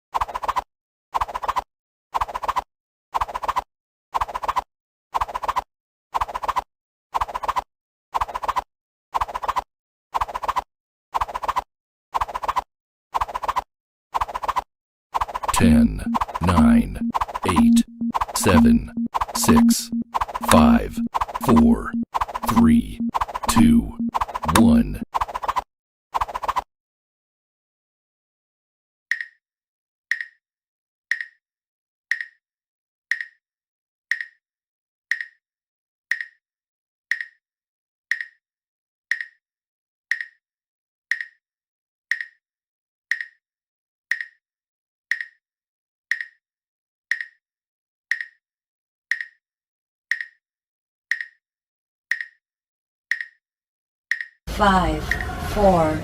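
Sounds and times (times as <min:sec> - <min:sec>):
timer ticking clicks: 0:15.6 - 0:25.0, 0:44.1 - 0:44.4, 0:45.1 - 0:45.4, 0:46.1 - 0:46.4, 0:47.1 - 0:47.4, 0:48.1 - 0:48.4, 0:49.1 - 0:49.4, 0:50.1 - 0:50.4, 0:51.1 - 0:51.4, 0:52.1 - 0:52.4, 0:53.1 - 0:53.4, 0:54.1 - 0:54.3.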